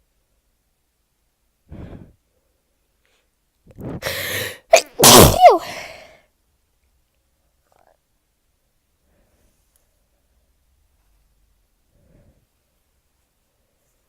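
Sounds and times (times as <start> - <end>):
woman breathing in: 1.7 - 2.2, 4.0 - 4.6
woman sneezing: 4.0 - 6.0.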